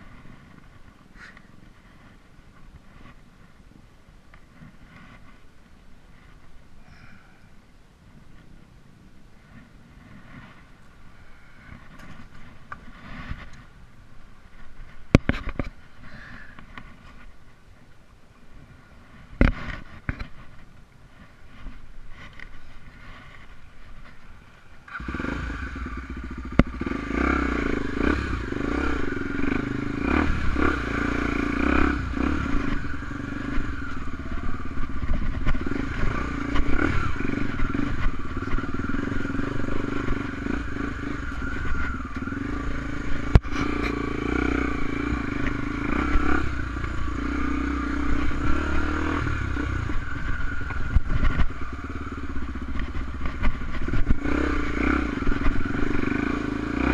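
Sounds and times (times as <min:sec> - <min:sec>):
motorcycle engine running: 0:18.5 - 0:56.9.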